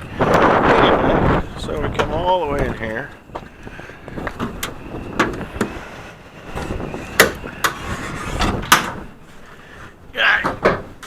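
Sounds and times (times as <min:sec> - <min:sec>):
steady low rumble: 0:00.0 - 0:10.2
knocks and clunks in a camper: 0:08.4 - 0:09.1, 0:10.4 - 0:11.0.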